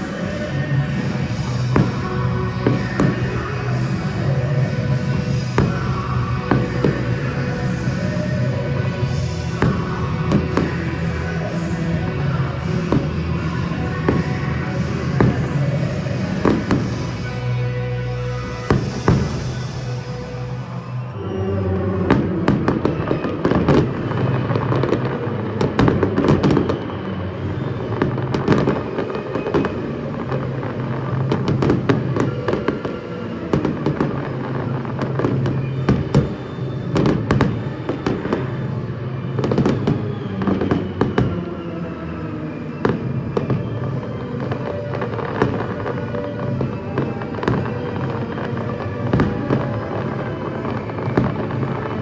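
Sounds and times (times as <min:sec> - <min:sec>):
music with steady bass: 0:00.0 - 0:40.0, 0:42.7 - 0:52.0
fireworks bursting and crackling: 0:00.0 - 0:52.0.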